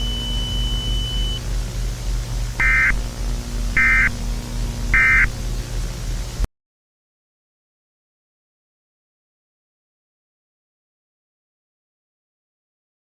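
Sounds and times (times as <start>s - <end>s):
steady high tone: 0.0s - 1.6s, 2.4s - 5.8s
buzzy digital data bursts: 0.0s - 6.5s
low hum and hiss: 0.0s - 6.5s.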